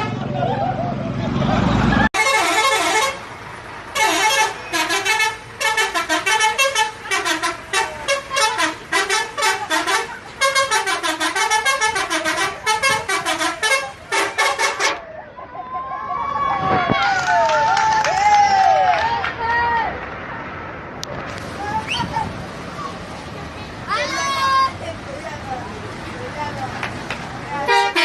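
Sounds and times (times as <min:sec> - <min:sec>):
musical bus horn warbling tune: 0:00.0 - 0:00.3, 0:02.1 - 0:15.0, 0:27.6 - 0:28.0.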